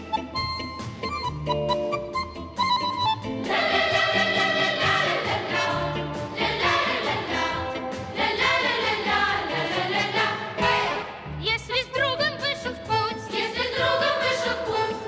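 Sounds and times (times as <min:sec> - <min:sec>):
choir singing: 0:03.5 - 0:11.2, 0:13.3 - 0:15.0.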